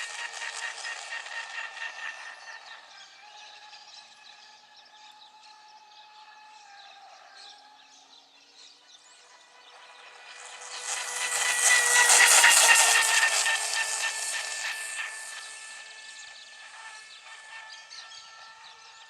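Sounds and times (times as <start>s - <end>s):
electric motor whine of boat: 9.2s - 19.0s.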